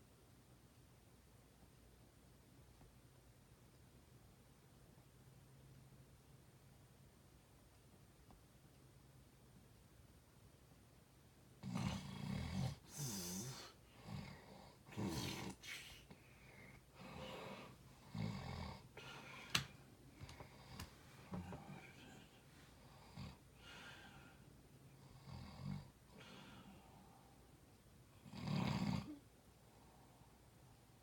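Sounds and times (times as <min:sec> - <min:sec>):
person snoring: 0:11.6 - 0:19.7, 0:28.2 - 0:29.2.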